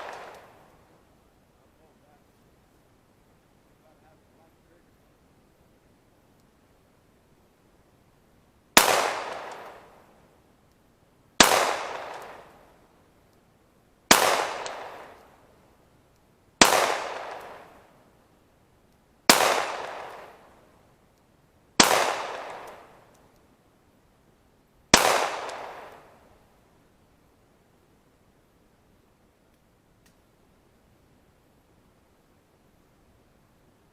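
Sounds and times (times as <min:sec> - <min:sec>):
pistol shots with echo: 0:08.8 - 0:09.9, 0:11.4 - 0:12.6, 0:14.1 - 0:15.2, 0:16.6 - 0:17.7, 0:19.3 - 0:20.4, 0:21.8 - 0:22.9, 0:24.9 - 0:26.1.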